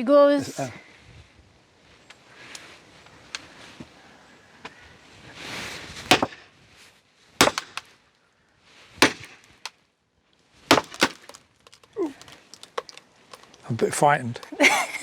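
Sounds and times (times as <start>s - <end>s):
log splitting: 6.0s - 6.6s, 7.4s - 8.0s, 9.0s - 9.8s, 10.6s - 14.4s
hammer striking steel wedge: 6.1s - 6.5s, 7.4s - 7.8s, 9.0s - 9.4s.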